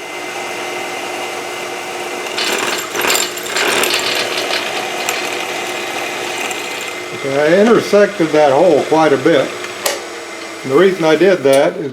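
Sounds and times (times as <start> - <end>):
drill bit cutting into metal: 2.2 - 7.8.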